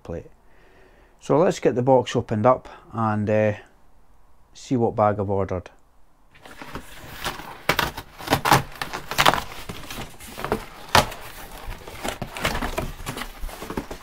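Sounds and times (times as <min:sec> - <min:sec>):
cardboard box scraping and rustling: 0:06.4 - 0:14.0.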